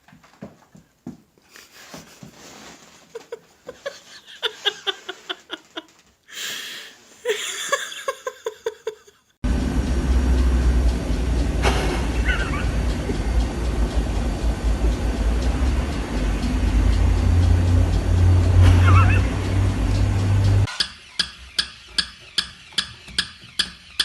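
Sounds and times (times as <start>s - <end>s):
person laughing: 2.9s - 9.3s, 12.1s - 13.4s, 18.7s - 19.4s
loud low rumble: 9.4s - 20.7s.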